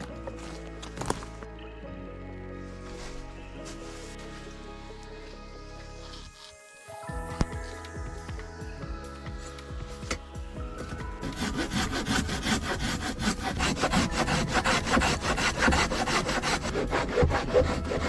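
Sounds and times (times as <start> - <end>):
faint background music: 0.0 - 18.0
hand saw cutting wood: 11.1 - 18.0.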